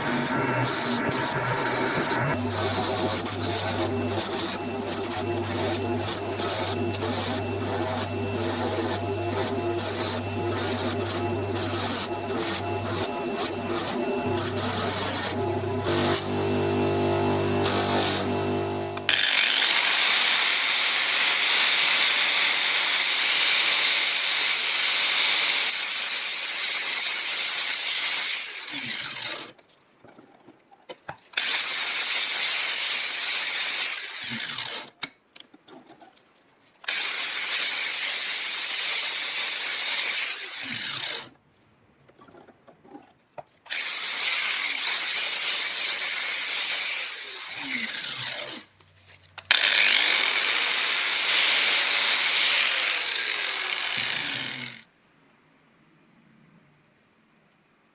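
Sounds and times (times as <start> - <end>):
motor humming: 0.0 - 19.4.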